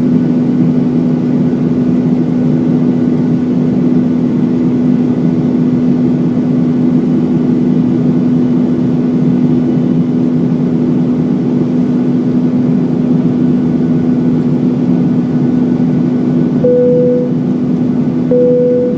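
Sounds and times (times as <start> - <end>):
airplane cabin drone: 0.0 - 18.9
short high tone: 16.6 - 17.4, 18.3 - 18.9.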